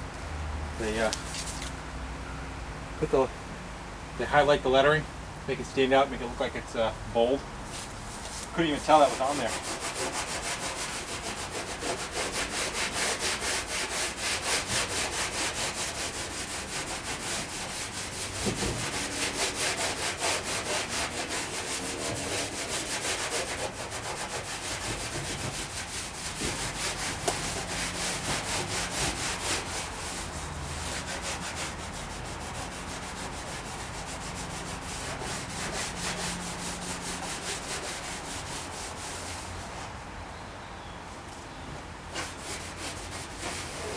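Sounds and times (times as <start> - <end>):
sandpaper rubbing on painted steel: 7.7 - 39.9, 42.1 - 43.9.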